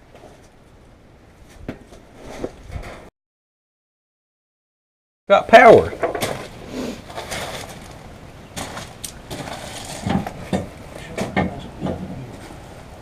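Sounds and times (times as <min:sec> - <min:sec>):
sharp metallic knocks and clanks: 0:08.6 - 0:12.0.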